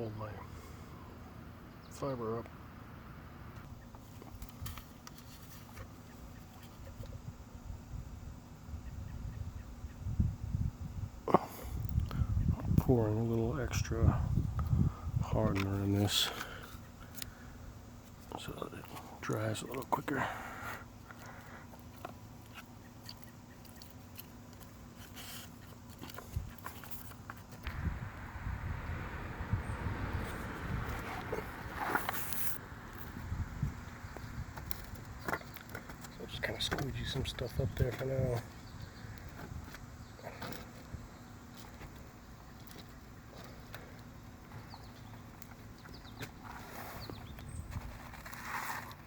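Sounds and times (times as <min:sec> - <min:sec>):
low steady hum: 0:00.0 - 0:46.0
short scrape: 0:30.2 - 0:32.6, 0:47.8 - 0:49.0.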